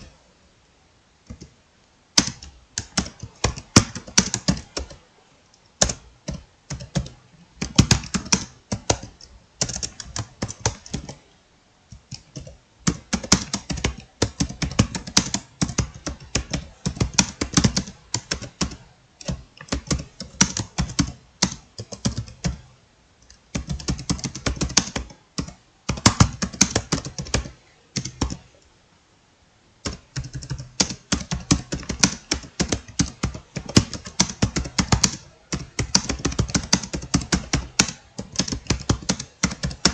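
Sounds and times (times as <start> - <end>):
keyboard typing: 1.2 - 1.6, 2.2 - 11.3, 11.9 - 28.6, 29.8 - 39.9.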